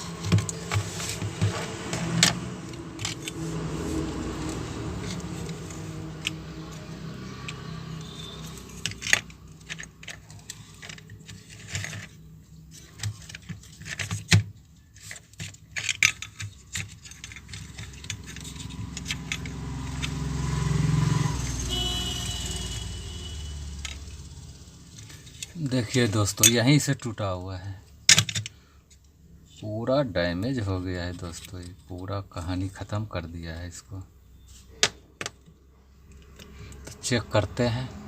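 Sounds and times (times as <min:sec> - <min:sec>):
low vehicle rumble: 0:00.0 - 0:11.3
small parts clicking and rattling: 0:02.1 - 0:20.2, 0:28.1 - 0:29.1.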